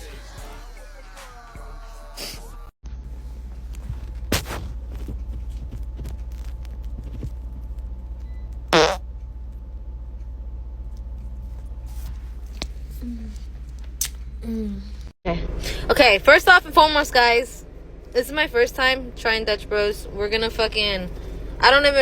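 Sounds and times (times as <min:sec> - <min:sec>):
steady low hum: 0:00.0 - 0:22.0
fart: 0:08.7 - 0:09.0.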